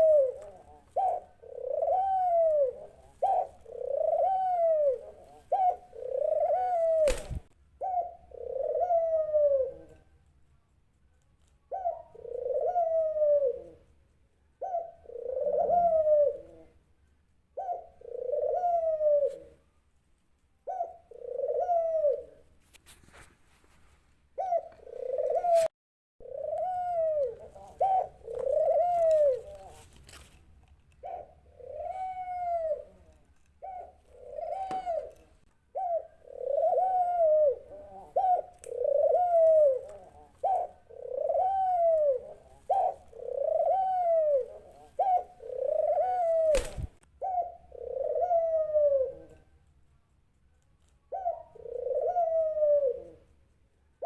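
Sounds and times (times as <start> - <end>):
dove cooing: 0.0 - 10.1, 11.6 - 13.9, 14.5 - 16.9, 17.5 - 19.7, 20.6 - 22.5, 24.4 - 30.2, 31.0 - 49.5, 51.0 - 53.4.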